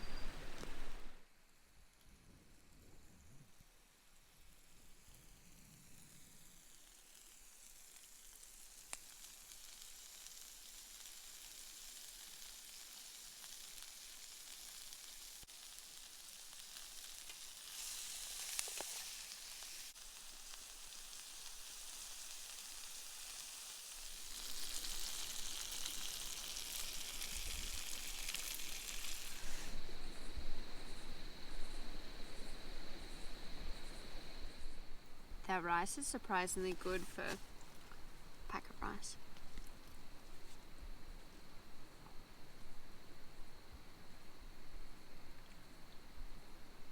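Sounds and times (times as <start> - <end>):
vegetables sizzling in oil: 3.8 - 31.1, 35.5 - 39.4.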